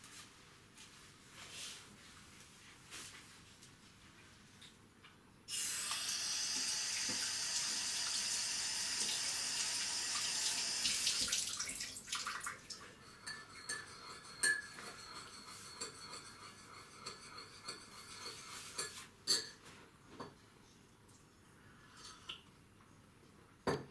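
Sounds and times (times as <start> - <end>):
water running: 5.5 - 13.4.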